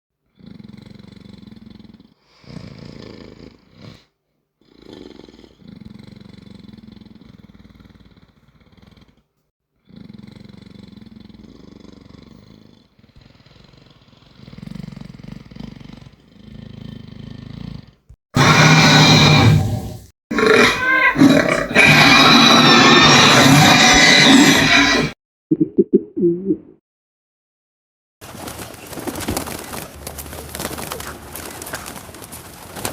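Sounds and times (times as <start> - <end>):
creature growls and rumbles: 9.8 - 25.2.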